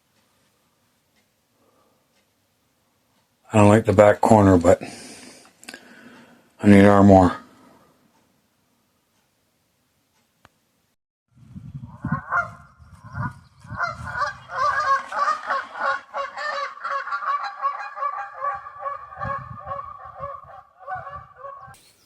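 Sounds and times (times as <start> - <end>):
geese honking: 12.1 - 22.0.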